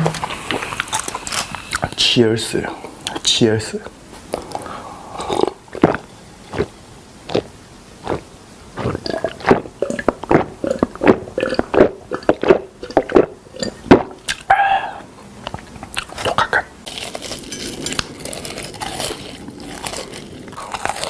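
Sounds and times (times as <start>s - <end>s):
mouth chewing wet smacking: 0.1s - 2.0s, 4.3s - 14.5s, 15.4s - 17.3s.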